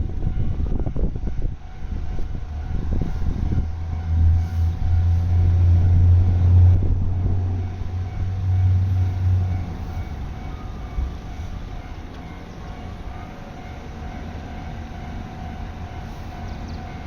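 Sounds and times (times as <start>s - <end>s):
passing vehicle rumble: 1.4s - 11.9s.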